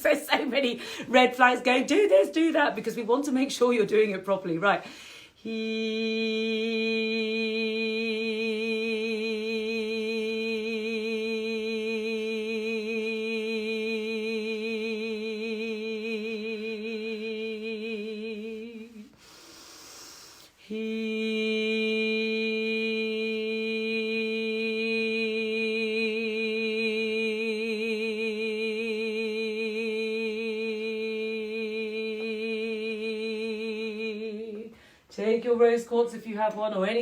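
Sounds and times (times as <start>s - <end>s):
audible in-breath: 0.8s - 1.1s, 4.8s - 5.4s, 19.0s - 20.7s, 34.7s - 35.1s.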